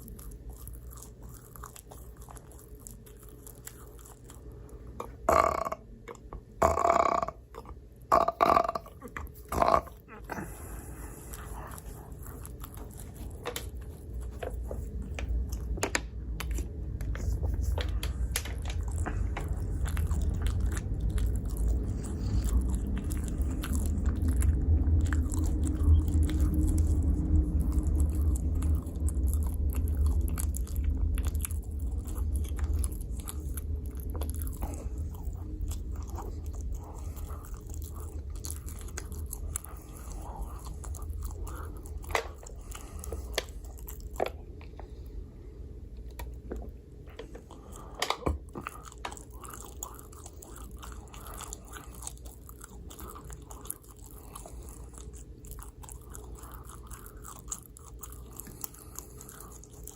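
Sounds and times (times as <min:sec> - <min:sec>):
close chewing with crunches: 0:00.0 - 0:59.9
low mouth rumble: 0:05.0 - 0:13.4.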